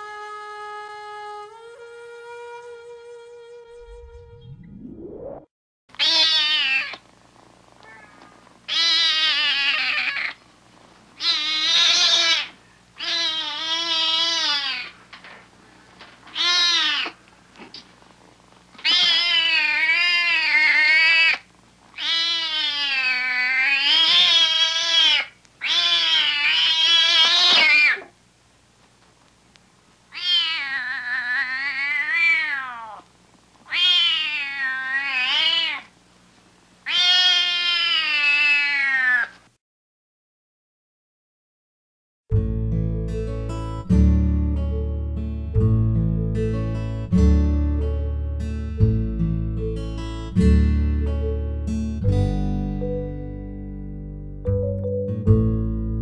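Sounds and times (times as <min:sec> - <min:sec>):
cat yowling: 0:06.0 - 0:07.0, 0:07.8 - 0:10.4, 0:11.2 - 0:14.9, 0:16.4 - 0:17.2, 0:18.8 - 0:28.1, 0:30.1 - 0:33.1, 0:33.7 - 0:35.9, 0:36.8 - 0:39.4.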